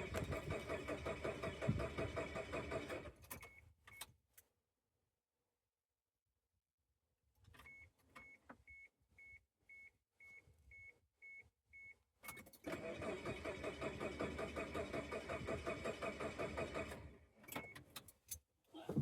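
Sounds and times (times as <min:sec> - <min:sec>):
starter cranking engine: 0:00.0 - 0:03.2, 0:12.7 - 0:17.2.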